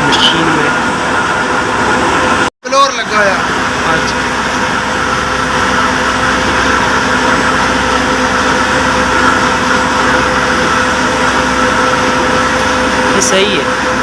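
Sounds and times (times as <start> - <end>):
electric flour mill grinding: 3.2 - 14.0.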